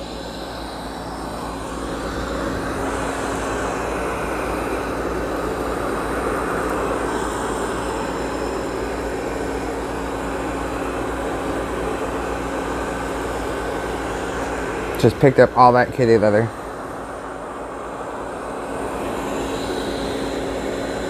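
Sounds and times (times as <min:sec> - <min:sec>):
robot vacuum motor humming: 0:00.0 - 0:15.7.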